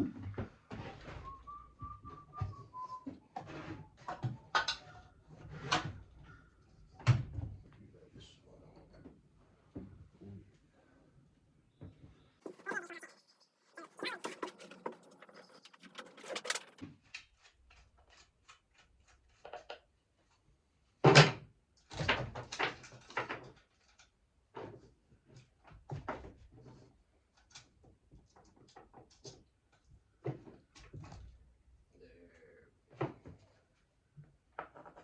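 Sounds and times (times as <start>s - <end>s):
metal parts clicking and clanking: 13.8s - 16.8s.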